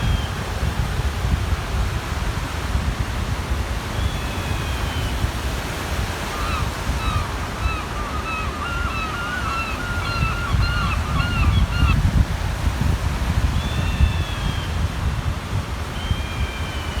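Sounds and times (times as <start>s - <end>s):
waves washing on shore: 0.0s - 17.0s
wind rumbling on microphone: 0.0s - 17.0s
gull calling: 6.2s - 12.0s.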